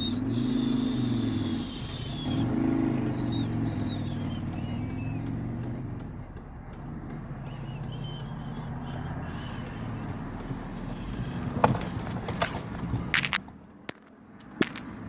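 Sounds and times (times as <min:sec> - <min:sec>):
car engine hum: 0:00.0 - 0:15.0
knocks and clatters: 0:11.5 - 0:15.0.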